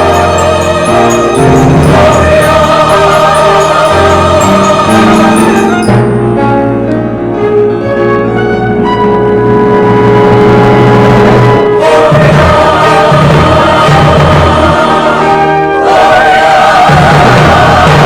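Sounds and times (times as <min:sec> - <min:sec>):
choir singing: 0:00.0 - 0:06.2, 0:11.7 - 0:18.0
orchestral accompaniment: 0:00.0 - 0:18.0.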